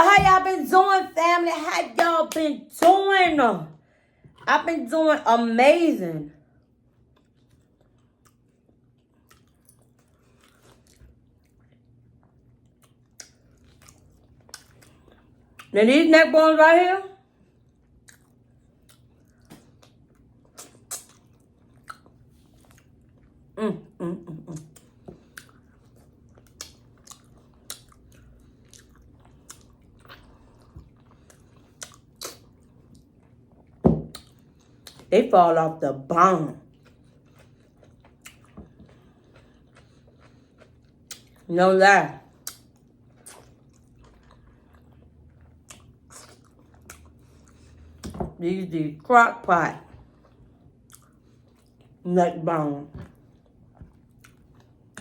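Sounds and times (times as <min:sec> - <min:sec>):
person chewing: 0:07.0 - 0:15.7, 0:17.4 - 0:23.6, 0:24.5 - 0:35.1, 0:36.6 - 0:41.5, 0:42.3 - 0:48.1, 0:50.0 - 0:52.0, 0:53.0 - 0:55.0
wet mouth clicks and smacks: 0:20.5 - 0:22.1, 0:31.8 - 0:32.4, 0:41.1 - 0:41.4, 0:42.4 - 0:43.5.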